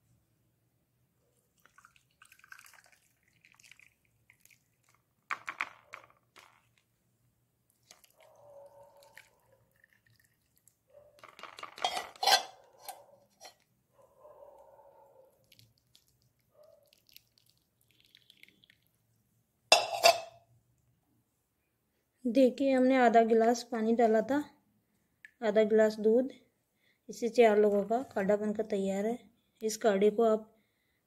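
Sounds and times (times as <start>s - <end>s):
hot liquid pouring: 1.6s - 7.0s, 7.7s - 12.5s, 15.4s - 19.1s, 19.7s - 20.3s
metal vessels clinking: 11.2s - 12.6s, 19.7s - 20.4s.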